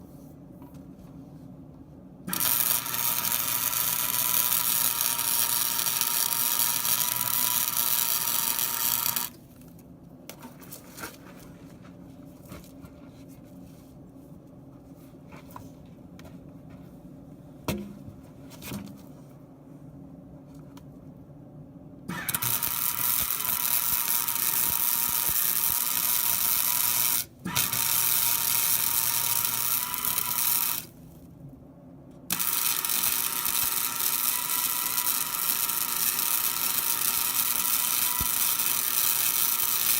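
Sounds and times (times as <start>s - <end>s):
faint steady whine: 0.0s - 39.9s
arc welding crackling sizzle: 2.3s - 9.4s, 22.1s - 31.0s, 32.3s - 39.9s.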